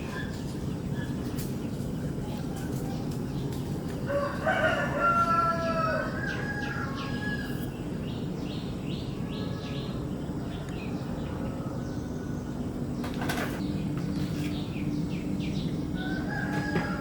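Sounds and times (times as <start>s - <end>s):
rooster crowing: 4.1s - 7.6s, 16.0s - 17.0s.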